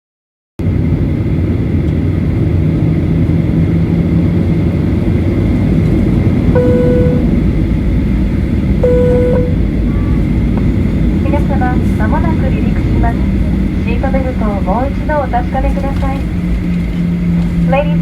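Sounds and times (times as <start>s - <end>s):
airliner cabin engine rumble: 0.6s - 18.0s
short chime tones: 6.6s - 7.2s, 8.8s - 9.6s.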